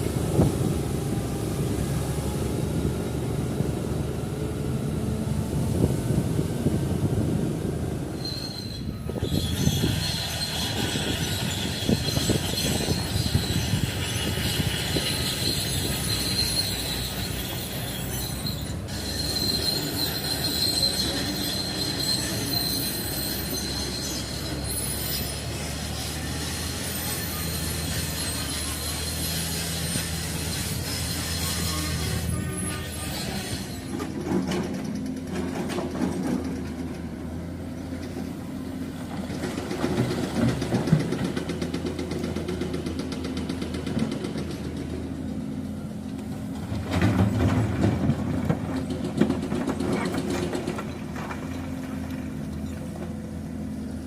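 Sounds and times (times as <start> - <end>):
diesel engine hum: 0.0 - 54.0
high-pitched track squeal: 8.0 - 34.2.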